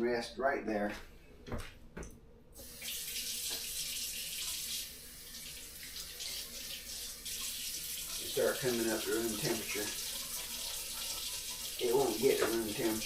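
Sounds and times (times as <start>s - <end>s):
tap water running into sink: 2.6s - 13.0s.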